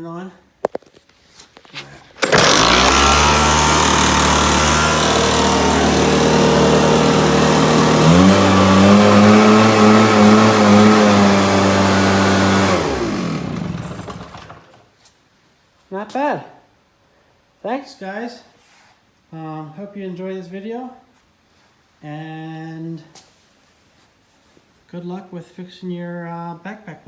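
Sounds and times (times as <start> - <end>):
leaf blower engine running: 2.2 - 14.8.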